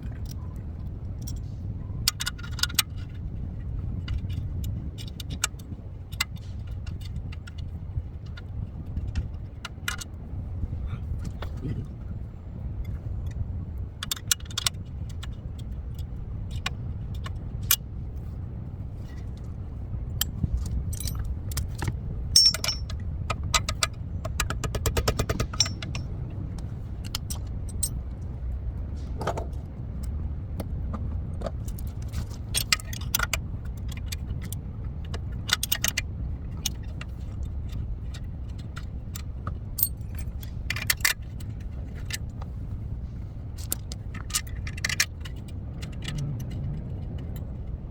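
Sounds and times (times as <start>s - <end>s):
steady low rumble: 0.0s - 47.9s
metal tools clinking: 20.9s - 21.3s, 22.4s - 23.0s, 25.1s - 26.1s, 39.8s - 41.0s.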